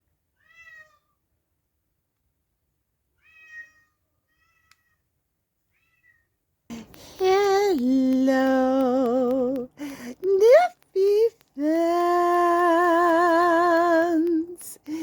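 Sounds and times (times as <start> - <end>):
cat meowing: 0.4 - 1.2, 3.2 - 5.0, 5.7 - 6.3.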